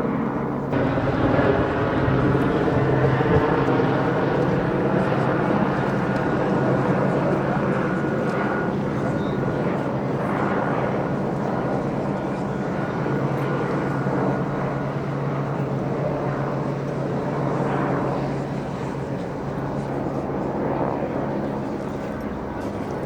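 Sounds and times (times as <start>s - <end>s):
engine drone: 0.7s - 6.4s.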